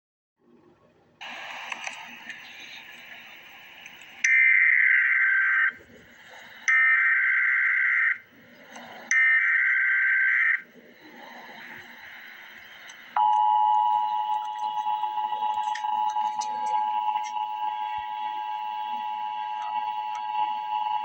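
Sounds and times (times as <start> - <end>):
digital data tone bursts: 8.9 - 21.0.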